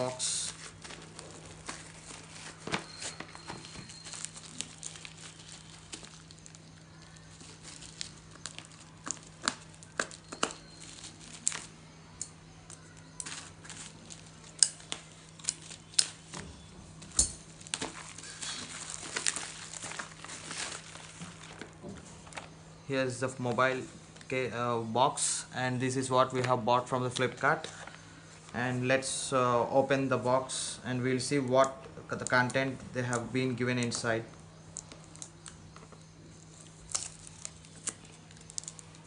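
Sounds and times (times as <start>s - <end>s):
packaging crinkling and tearing: 0.1s - 11.8s, 12.6s - 16.3s, 17.0s - 22.6s, 33.8s - 39.0s.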